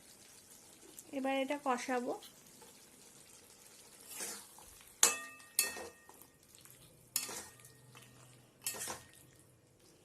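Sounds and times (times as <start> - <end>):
light sizzle: 0.0 - 10.0
spatula knocking and scraping pan: 4.1 - 6.2, 7.2 - 7.6.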